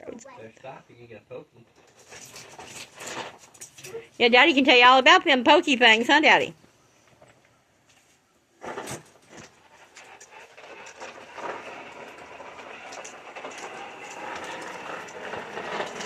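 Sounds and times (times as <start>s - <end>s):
toy lawnmower clattering: 1.8s - 4.6s, 8.7s - 16.0s.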